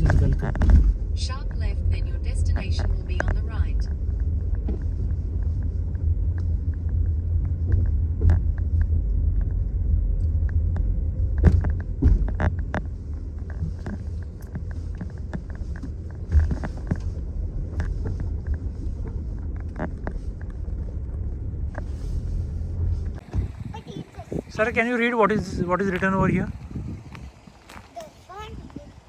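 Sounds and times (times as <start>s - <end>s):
knocks and bumps: 0.0s - 9.7s, 10.4s - 22.0s
car road rumble from inside: 0.0s - 29.0s.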